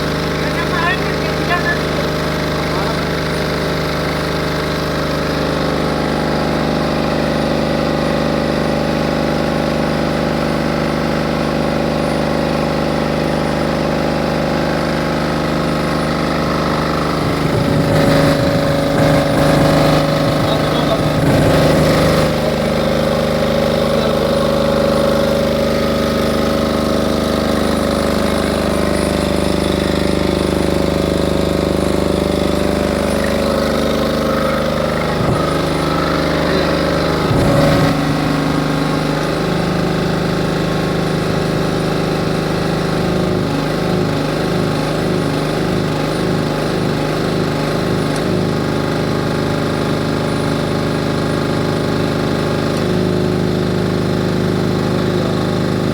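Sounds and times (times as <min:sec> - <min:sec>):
diesel generator running: 0:00.0 - 0:55.9.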